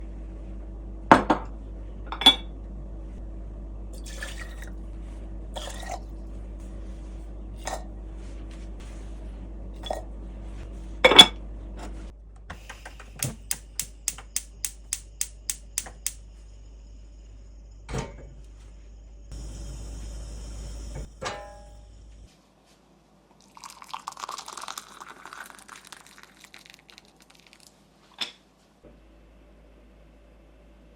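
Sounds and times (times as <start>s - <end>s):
low hum: 0.0s - 22.3s.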